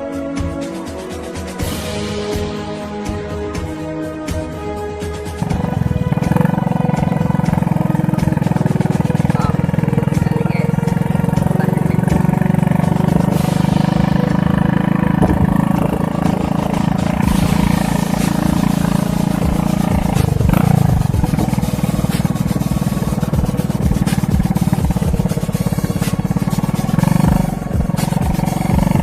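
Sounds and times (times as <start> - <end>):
music: 0.0 - 29.0
small engine running steadily: 0.0 - 29.0.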